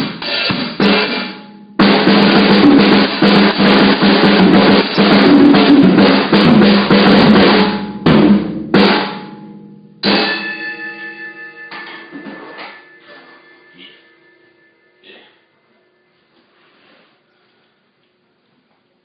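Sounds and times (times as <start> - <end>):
snare and bass drum hits: 0.0 - 10.5.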